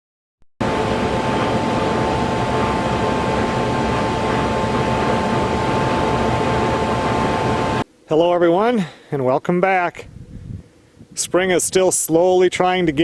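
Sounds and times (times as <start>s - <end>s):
mechanical drone with whine: 0.6s - 7.8s.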